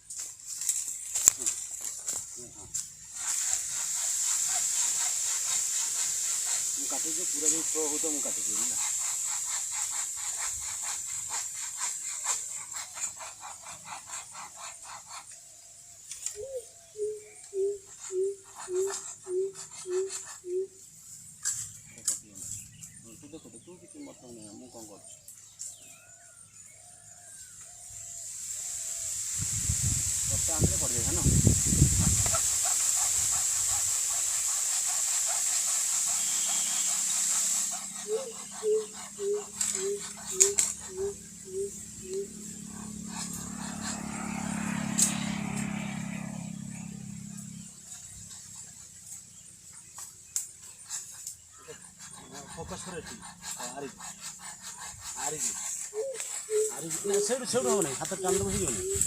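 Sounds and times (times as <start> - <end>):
steady high hiss: 0.0 - 12.5, 28.0 - 42.7
high-pitched outdoor hiss: 0.0 - 59.0.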